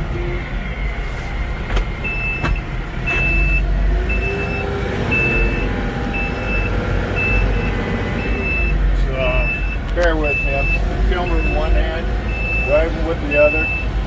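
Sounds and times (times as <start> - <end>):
tractor diesel engine running: 0.0 - 14.0
reverse alarm beeping: 1.9 - 14.0.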